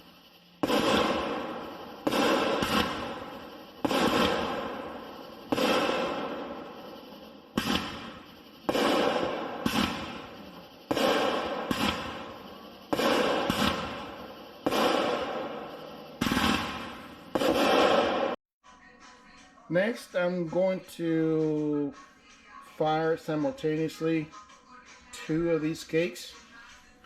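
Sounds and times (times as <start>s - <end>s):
fireworks shots: 0.0s - 18.4s
small fireworks pops: 0.0s - 18.4s.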